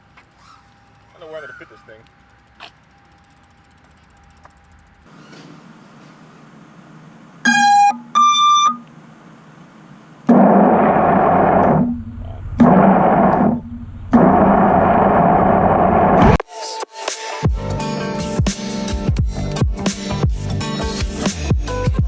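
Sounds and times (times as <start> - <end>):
low hum: 10.2 - 16.4.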